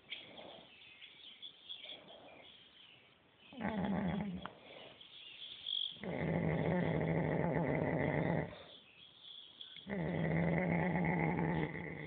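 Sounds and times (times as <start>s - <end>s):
cow snoring: 3.6s - 4.5s, 6.0s - 8.6s, 9.9s - 12.0s.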